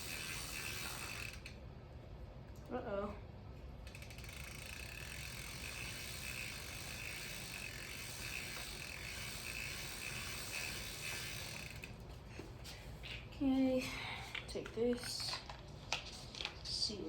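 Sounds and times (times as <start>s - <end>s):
freehub pawls clicking: 0.0s - 1.6s, 3.8s - 12.2s
bicycle chain running through derailleur: 0.0s - 1.7s, 3.8s - 12.2s.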